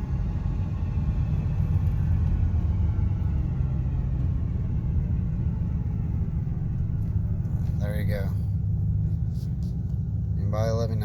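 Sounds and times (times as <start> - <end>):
faint drivetrain whine: 0.0 - 11.0
low road rumble inside car: 0.0 - 11.0.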